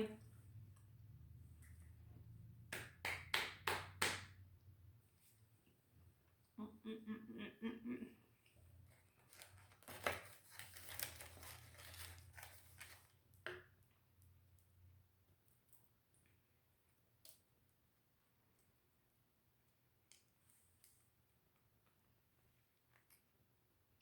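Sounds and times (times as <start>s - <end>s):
person humming: 6.6s - 8.2s.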